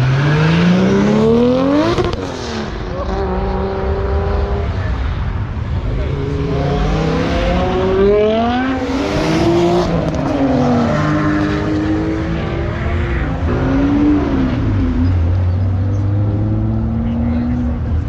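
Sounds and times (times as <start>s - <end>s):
car engine revving hard: 0.0s - 4.7s, 5.9s - 17.5s.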